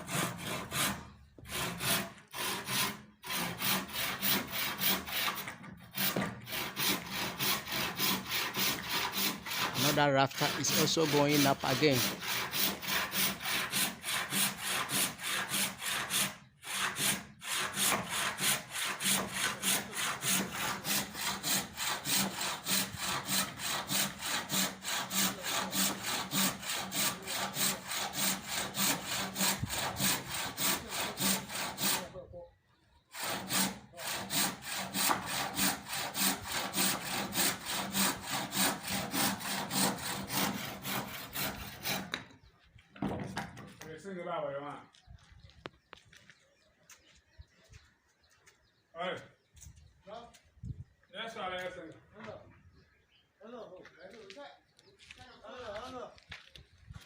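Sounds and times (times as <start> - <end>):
handsaw cutting timber: 0.0 - 32.2, 33.1 - 42.5.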